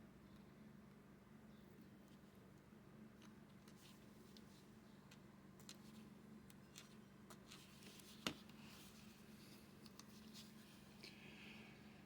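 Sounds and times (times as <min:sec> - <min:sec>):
low steady hum: 0:00.0 - 0:12.0
faint clicks and rustles: 0:01.8 - 0:11.3.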